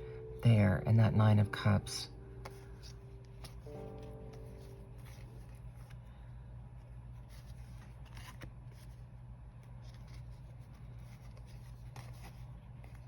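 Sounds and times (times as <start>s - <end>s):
steady low hum: 0.0s - 13.0s
cards being flipped through: 2.4s - 6.2s, 6.8s - 13.0s.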